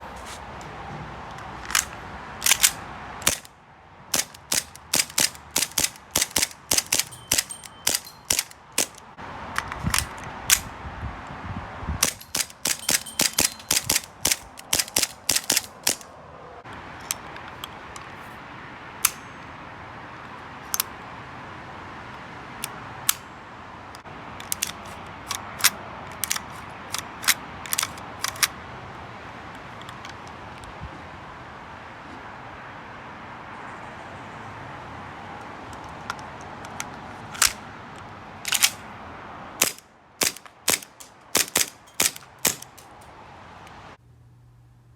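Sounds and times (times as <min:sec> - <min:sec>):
airsoft pistol firing: 0:39.6 - 0:42.8.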